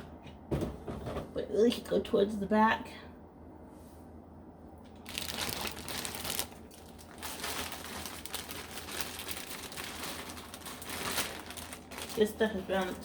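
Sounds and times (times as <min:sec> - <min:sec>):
plastic packaging crinkling: 0:04.9 - 0:13.0.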